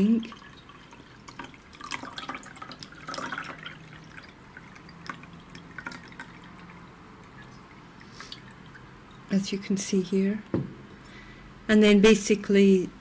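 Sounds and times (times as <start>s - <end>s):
water dripping and splashing: 0.0s - 9.3s.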